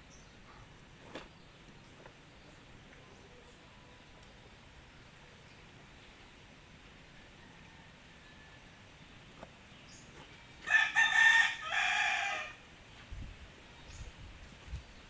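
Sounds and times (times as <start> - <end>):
rooster crowing: 7.2 - 8.8, 10.6 - 12.6.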